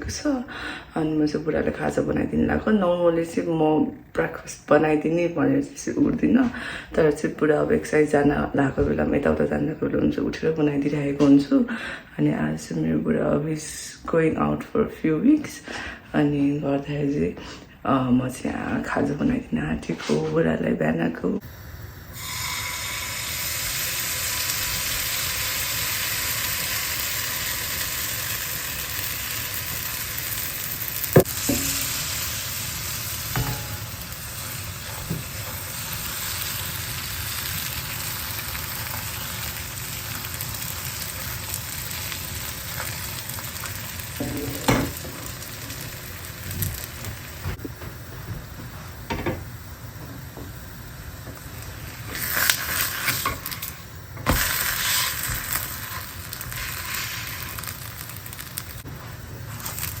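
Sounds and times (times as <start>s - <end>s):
food sizzling in a pan: 21.4s - 47.6s, 50.9s - 60.0s.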